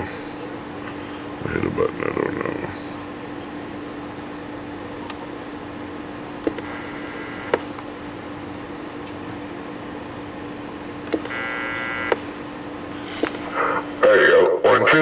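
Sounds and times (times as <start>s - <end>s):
steady low hum: 0.0s - 15.0s
buzzy radio tone: 1.0s - 3.0s, 6.5s - 7.7s, 11.2s - 12.2s, 13.0s - 15.0s
radio button clicks: 6.4s - 6.7s, 7.4s - 7.8s, 11.1s - 11.4s.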